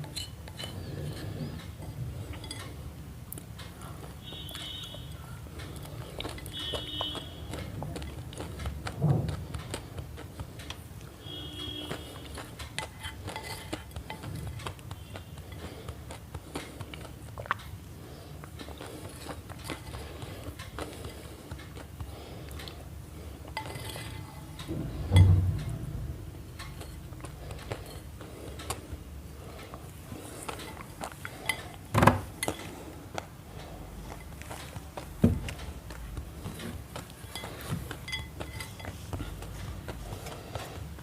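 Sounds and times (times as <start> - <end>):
low steady rumble: 24.4 - 30.2
loud thump: 24.7 - 26.4
light clinks and knocks of objects: 29.6 - 40.8.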